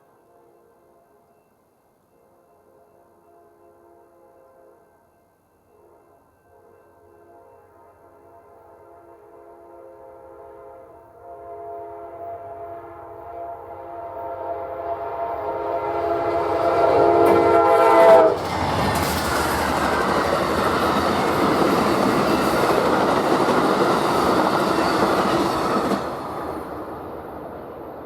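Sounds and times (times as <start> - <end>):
train air horn: 2.2 - 18.5
train wheels rushing on rail: 14.9 - 28.0.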